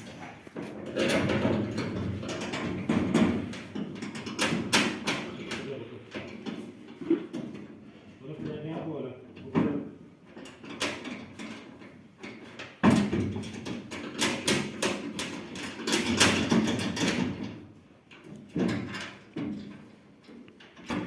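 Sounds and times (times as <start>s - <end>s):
metal clanks and scraping: 0.0s - 7.8s.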